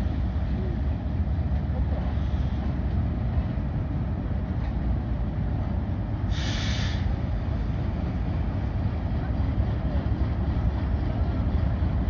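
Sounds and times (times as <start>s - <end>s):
train rumbling: 0.0s - 12.0s
short hiss: 6.3s - 7.2s.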